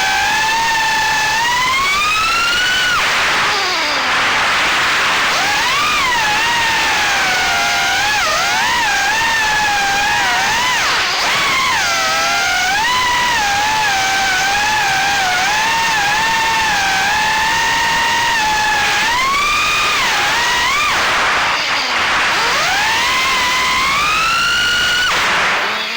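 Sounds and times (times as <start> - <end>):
quadcopter motors whining: 0.0 - 25.9.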